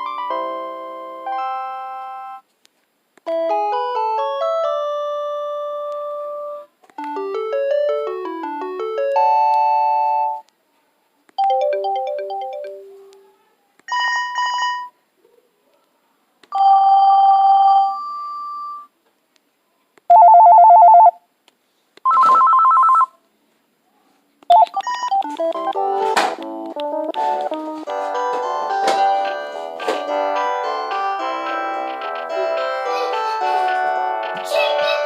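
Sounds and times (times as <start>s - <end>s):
electronic phone ringtones: 11.4s - 13.0s, 20.1s - 21.2s, 22.1s - 23.2s, 24.5s - 25.9s.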